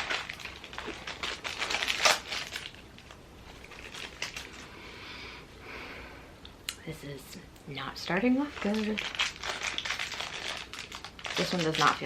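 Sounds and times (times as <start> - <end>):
packaging rustling: 0.0 - 4.7, 8.4 - 12.0.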